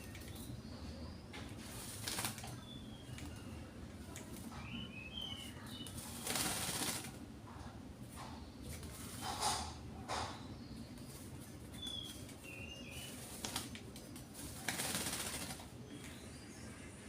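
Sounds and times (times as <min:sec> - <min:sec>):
bird wings flapping: 0:01.7 - 0:02.6, 0:05.8 - 0:07.2, 0:13.1 - 0:15.7
high bird chirps: 0:04.5 - 0:06.4, 0:11.7 - 0:13.2, 0:15.8 - 0:17.0.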